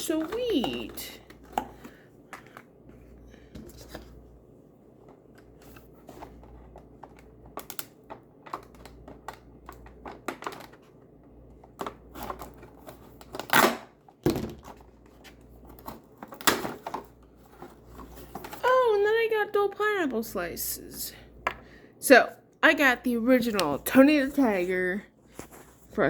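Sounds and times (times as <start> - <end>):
packaging clicks and crinkles: 5.1 - 11.0.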